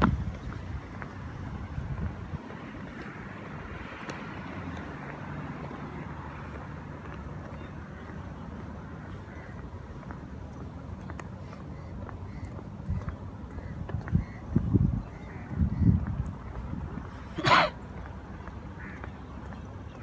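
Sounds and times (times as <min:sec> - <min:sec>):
traffic rumble: 0:00.0 - 0:20.0.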